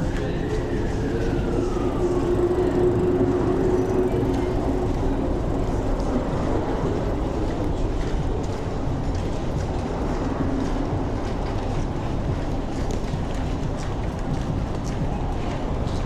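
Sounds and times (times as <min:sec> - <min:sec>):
falling whine: 0:00.0 - 0:08.0
rail vehicle rumbling past: 0:00.0 - 0:16.0.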